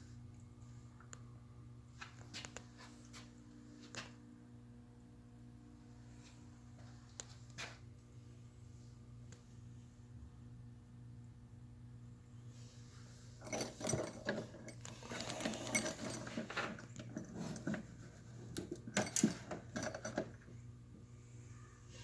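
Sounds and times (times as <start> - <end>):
steady low hum: 0.0 - 22.0
metal keys jangling: 13.4 - 17.8, 18.5 - 20.4.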